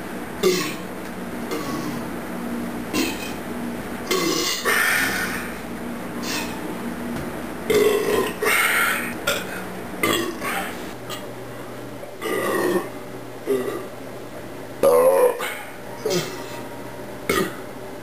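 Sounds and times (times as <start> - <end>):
man burping: 0.4 - 0.8, 1.5 - 2.0, 3.0 - 3.4, 4.1 - 5.5, 7.7 - 11.2, 12.2 - 13.9, 17.3 - 17.6.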